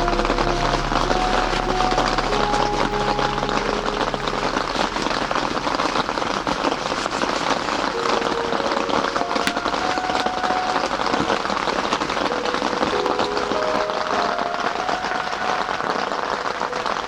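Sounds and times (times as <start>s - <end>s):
steady rain pattering: 0.0s - 17.0s.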